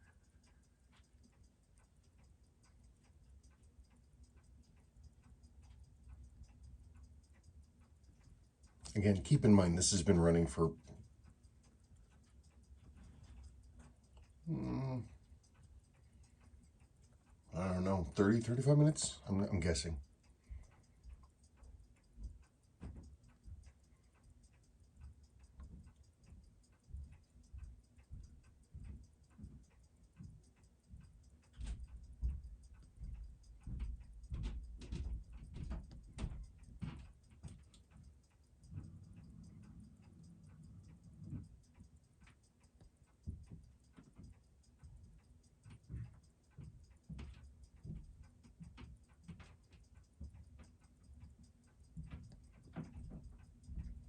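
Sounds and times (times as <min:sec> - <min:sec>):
watch ticking rapidly: 0:00.0 - 0:54.0.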